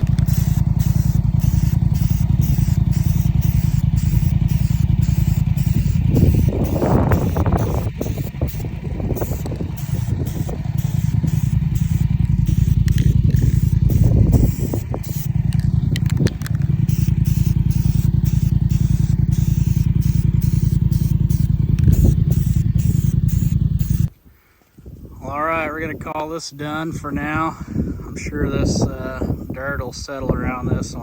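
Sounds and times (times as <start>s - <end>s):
diesel engine running: 0.0s - 24.2s.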